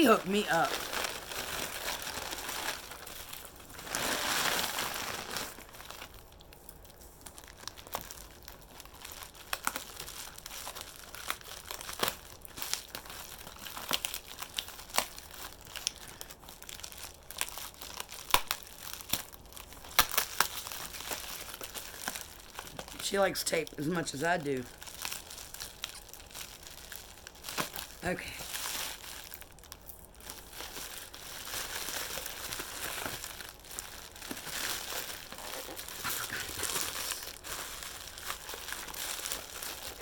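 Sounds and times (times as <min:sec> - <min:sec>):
packing tape crinkling and tearing: 0:00.0 - 0:40.0
sharp crackles and snaps: 0:05.4 - 0:16.1, 0:17.0 - 0:22.9.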